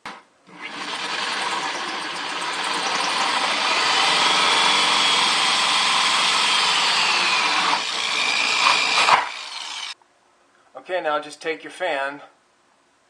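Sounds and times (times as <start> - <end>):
power tool cutting plastic: 0.5 - 10.0.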